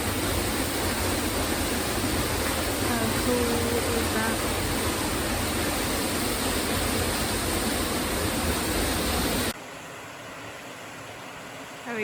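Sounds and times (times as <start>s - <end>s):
waterfall roaring: 0.0s - 9.6s.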